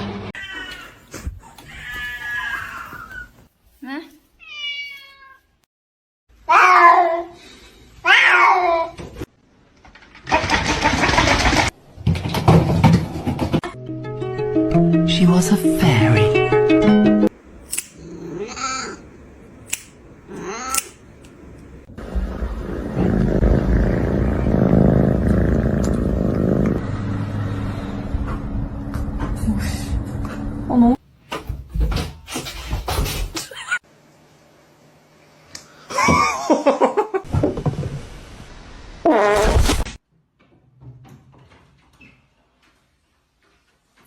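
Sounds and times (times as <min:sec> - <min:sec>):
cat meowing: 0:00.4 - 0:01.0, 0:04.4 - 0:05.5
cat purring: 0:22.1 - 0:26.8.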